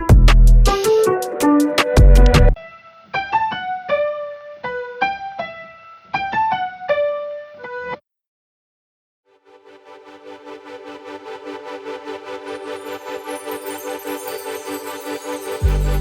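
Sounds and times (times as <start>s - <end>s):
soft keyboard melody: 0.0s - 7.5s, 9.5s - 16.0s
sustained synth chord: 9.3s - 13.9s.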